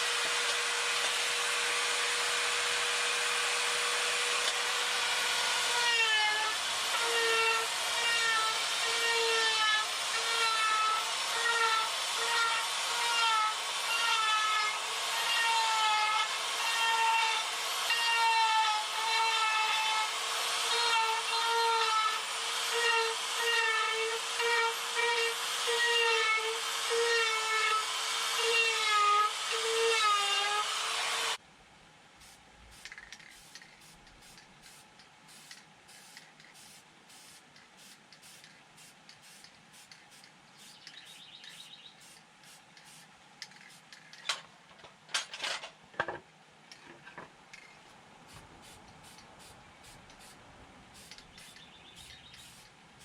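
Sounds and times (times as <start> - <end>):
power carving tool cutting wood: 0.0 - 31.4.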